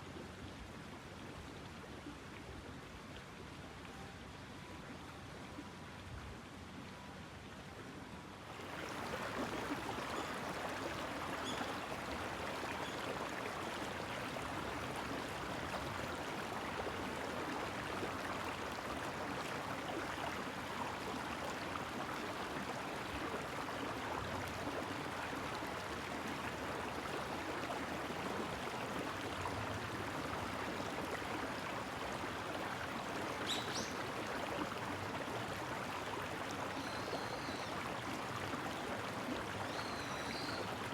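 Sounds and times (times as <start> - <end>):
running water rushing: 8.5 - 40.9.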